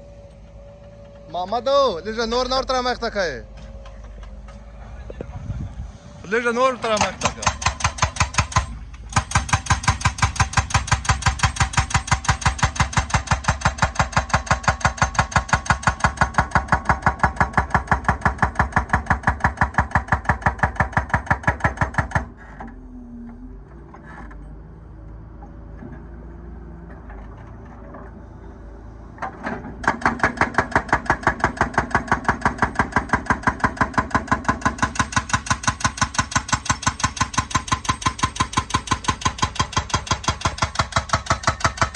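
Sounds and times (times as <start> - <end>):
excavator engine running: 0.0 - 41.9
hydraulic breaker hammering: 6.8 - 22.4, 29.3 - 41.9.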